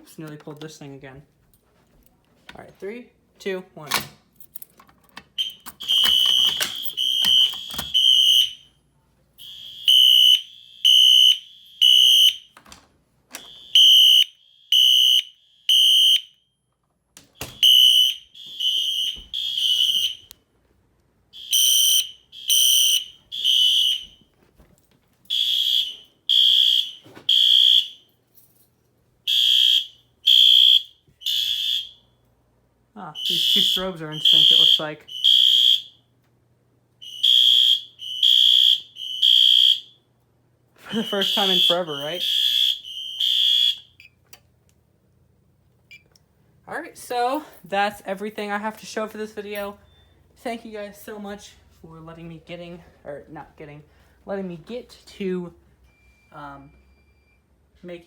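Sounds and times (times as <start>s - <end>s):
fire alarm horn beeps: 5.3s - 8.8s, 9.4s - 12.6s, 13.3s - 16.7s, 17.4s - 20.4s, 21.3s - 24.3s, 25.3s - 28.2s, 29.3s - 32.2s, 33.1s - 36.1s, 37.0s - 40.1s, 40.8s - 44.2s.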